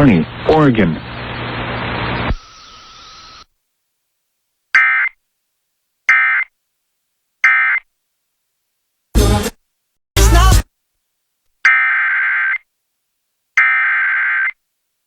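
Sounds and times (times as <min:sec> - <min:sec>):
harsh two-tone data buzz: 0:00.0 - 0:03.5, 0:11.6 - 0:12.6.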